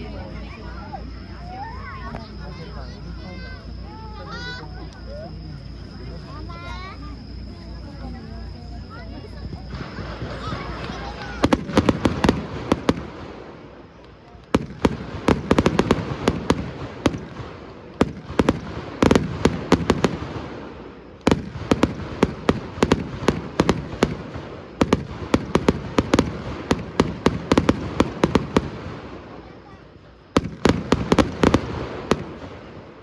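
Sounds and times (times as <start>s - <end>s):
fireworks bursting: 0.0s - 33.0s.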